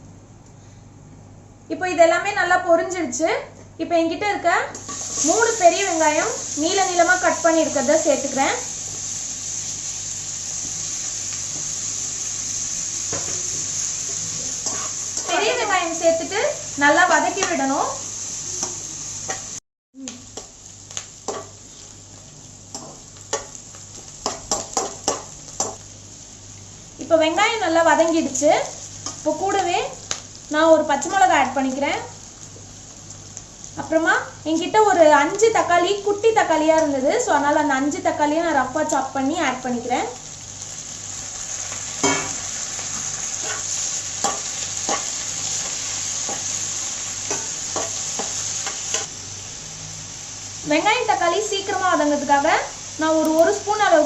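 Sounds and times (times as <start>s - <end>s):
onions sizzling in a pan: 4.8s - 54.0s
spatula scraping a pan: 14.5s - 15.8s, 43.0s - 46.6s
spoon scraping and knocking pan: 21.3s - 21.6s, 24.2s - 25.8s, 43.0s - 46.6s, 47.3s - 49.1s.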